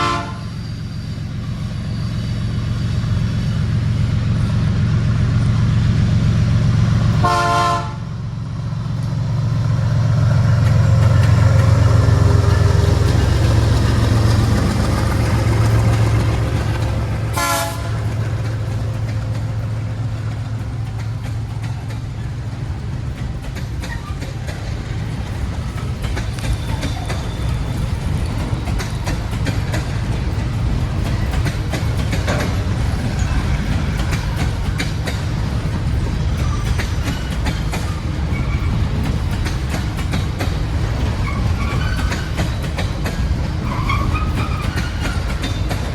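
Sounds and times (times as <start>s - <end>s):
train horn blasts: 0.0s - 0.6s, 7.2s - 8.2s, 17.0s - 18.2s
locomotive engine roaring: 0.0s - 45.9s.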